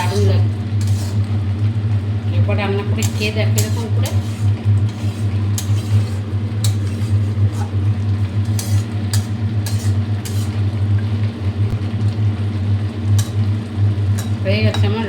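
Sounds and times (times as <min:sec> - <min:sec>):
spatula scraping a pan: 0:00.0 - 0:01.3, 0:02.8 - 0:10.8, 0:13.2 - 0:13.5, 0:14.1 - 0:15.0
low steady hum: 0:00.0 - 0:15.0.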